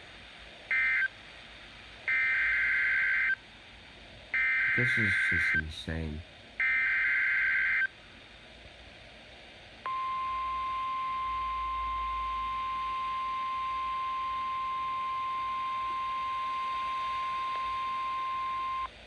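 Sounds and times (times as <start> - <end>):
steady high-pitched alarm beep: 0.7 - 1.1, 2.1 - 3.4, 4.4 - 5.8, 6.6 - 7.9, 9.9 - 18.9.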